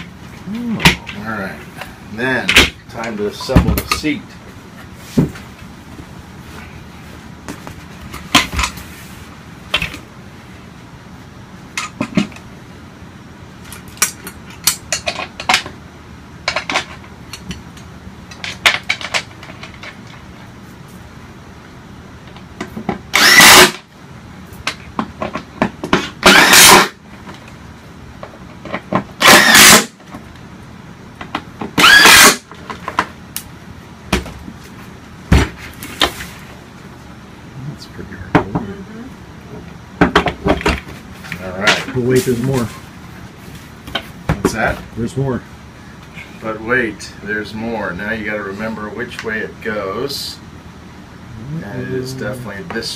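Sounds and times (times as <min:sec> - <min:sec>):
power driver driving screws: 0:23.1 - 0:23.8, 0:26.2 - 0:26.9, 0:29.2 - 0:29.9, 0:31.8 - 0:32.4.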